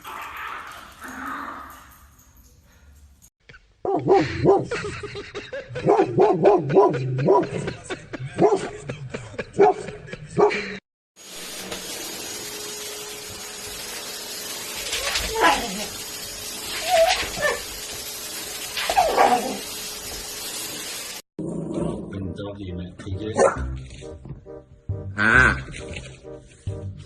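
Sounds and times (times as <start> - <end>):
dog yipping: 16.7 - 17.7, 18.8 - 19.6.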